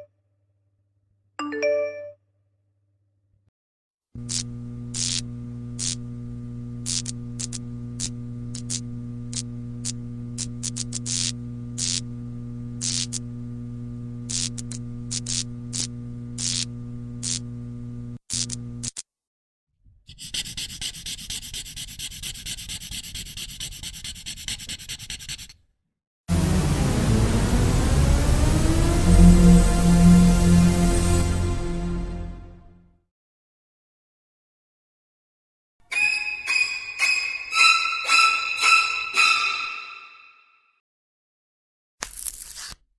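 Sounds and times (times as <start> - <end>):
crackling sparks: 4.2 - 6.1, 6.8 - 12.1, 12.8 - 13.2, 14.3 - 17.5.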